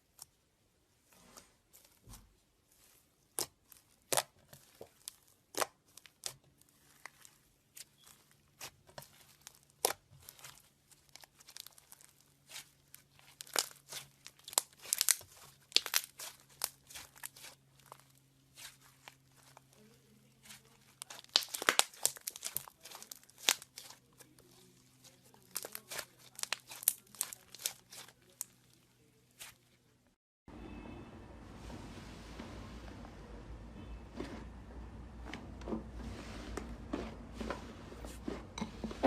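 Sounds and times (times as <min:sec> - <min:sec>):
slime crackling and popping: 0:02.7 - 0:19.8, 0:20.4 - 0:28.7.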